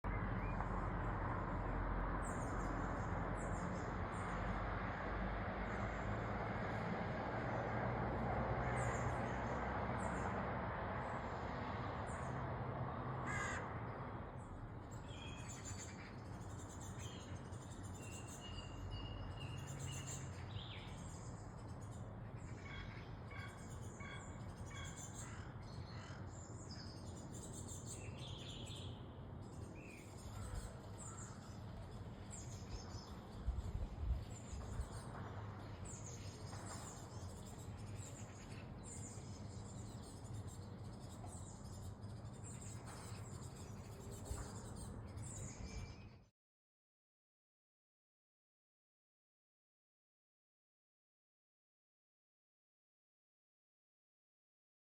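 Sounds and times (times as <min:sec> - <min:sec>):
birds chirping: 0:14.9 - 0:46.3.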